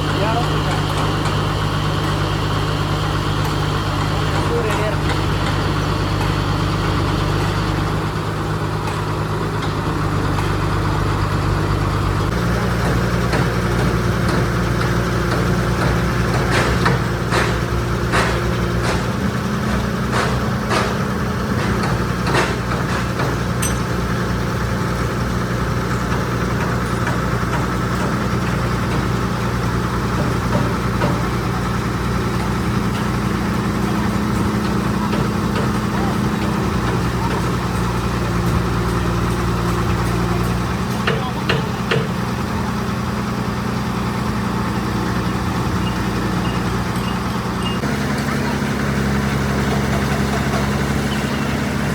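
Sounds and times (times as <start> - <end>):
diesel engine running: 0.0 - 51.9
sharp knocks: 12.8 - 23.8.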